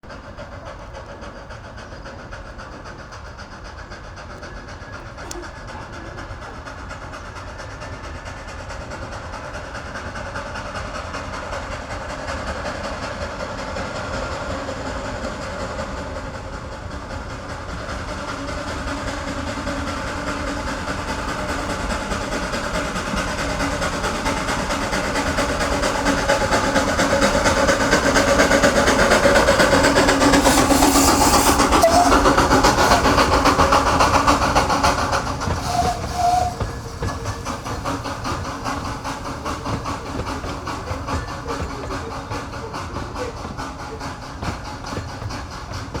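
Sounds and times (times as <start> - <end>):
train passing: 0.0 - 46.0
hiss burst: 26.3 - 46.0.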